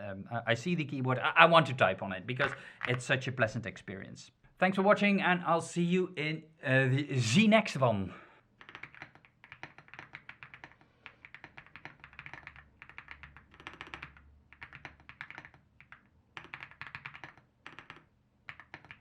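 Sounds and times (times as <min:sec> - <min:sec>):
mechanical keyboard typing: 0:02.4 - 0:03.1, 0:08.6 - 0:19.0.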